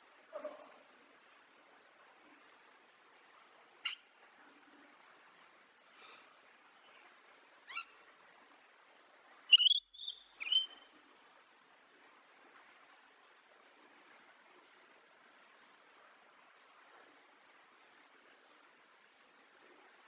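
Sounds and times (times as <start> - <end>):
faint hiss: 0.0 - 20.0
parrot calling: 9.5 - 10.8.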